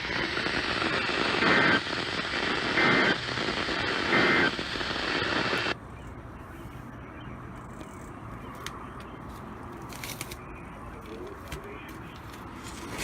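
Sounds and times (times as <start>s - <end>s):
data tone bursts: 0.0s - 5.8s
radio hiss: 0.0s - 5.8s.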